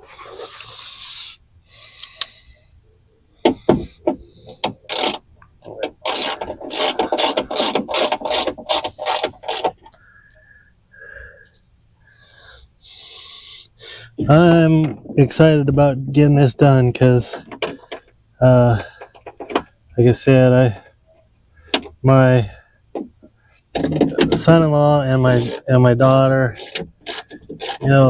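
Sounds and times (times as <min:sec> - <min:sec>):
ratchet wrench clicking: 0:04.6 - 0:05.2, 0:06.0 - 0:09.7, 0:25.3 - 0:25.7, 0:26.6 - 0:27.9.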